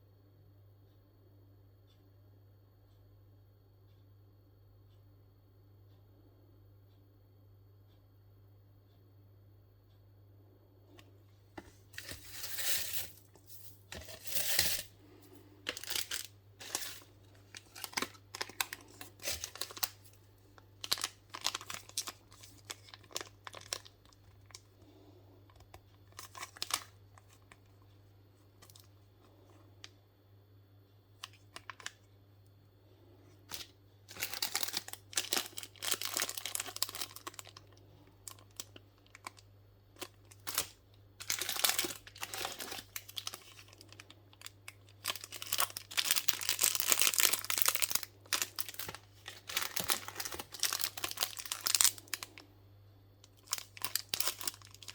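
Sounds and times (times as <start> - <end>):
packaging rustling: 11.9 - 15.0, 15.6 - 24.7, 25.5 - 27.8, 33.5 - 39.4, 40.0 - 52.4, 53.3 - 54.9
packaging crinkling and tearing: 15.7 - 24.7, 25.5 - 27.8, 31.2 - 32.0, 33.5 - 39.4, 40.0 - 52.4, 53.3 - 54.9.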